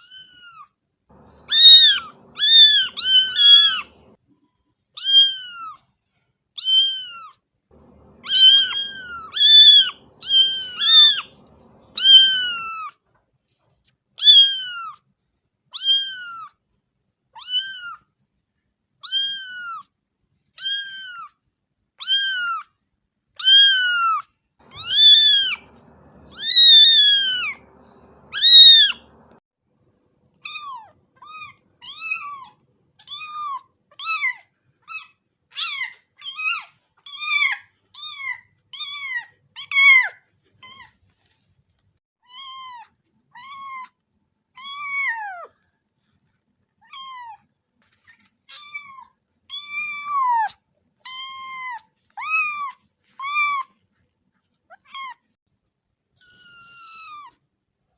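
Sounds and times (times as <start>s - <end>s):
cat meowing: 0.0s - 4.2s, 5.0s - 5.8s, 6.6s - 13.0s, 14.2s - 15.0s, 15.8s - 16.5s, 17.4s - 18.0s, 19.0s - 19.8s, 20.6s - 21.3s, 22.0s - 22.7s, 23.4s - 29.4s, 30.4s - 40.9s, 44.6s - 45.5s, 46.8s - 47.4s, 48.5s - 53.7s, 56.2s - 57.4s.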